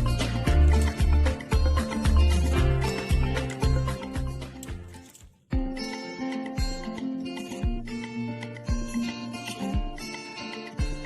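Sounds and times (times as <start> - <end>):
plucked guitar and bass: 0.0 - 4.9
background music with beat: 0.0 - 11.0.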